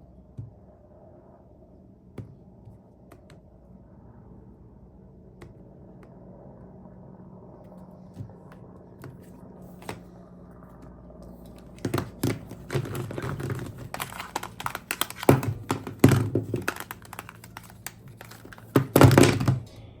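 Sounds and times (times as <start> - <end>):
faint steady hum: 0.0 - 20.0
handling taps clicks and knocks: 11.4 - 19.6.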